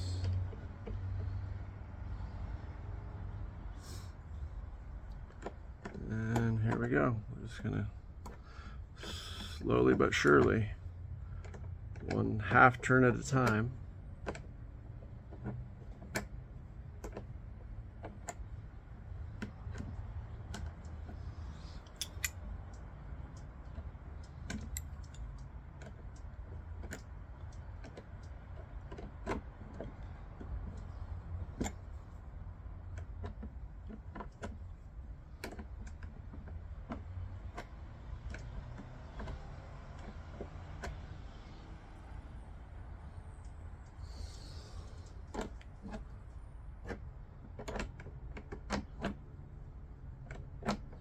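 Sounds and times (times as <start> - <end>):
low steady hum: 3.1 - 27.0
wrench clicking on metal: 21.8 - 22.4.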